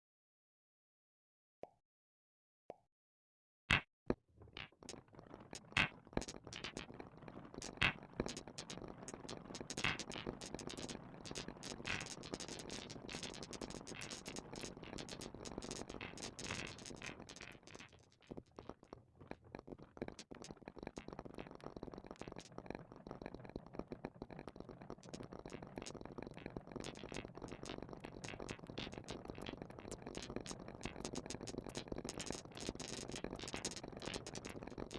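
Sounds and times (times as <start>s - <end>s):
marbles rolling down a marble run: 4.6s - 34.9s.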